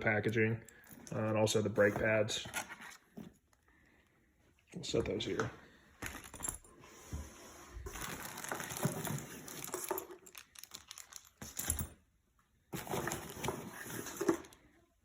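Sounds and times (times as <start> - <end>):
box packaging rustling and crinkling: 1.1 - 3.5, 7.3 - 12.0, 12.7 - 14.7.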